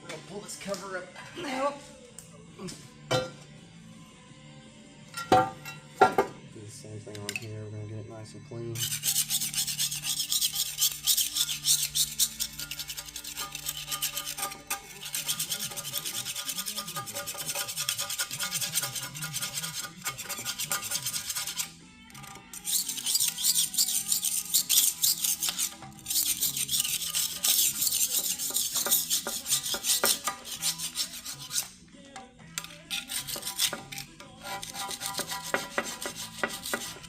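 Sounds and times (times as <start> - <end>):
hand scraping on metal: 8.8 - 21.7, 22.6 - 31.7, 32.6 - 37.0.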